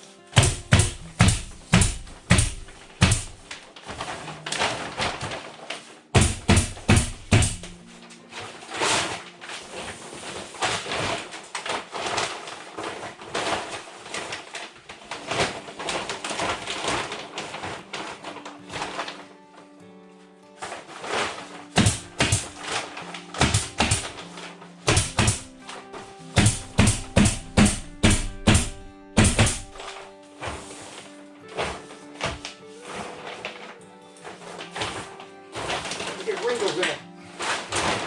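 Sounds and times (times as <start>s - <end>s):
sharp knocks: 0.4s - 3.5s, 6.2s - 7.8s, 21.8s - 22.7s, 23.4s - 24.2s, 24.9s - 25.6s, 26.4s - 30.0s.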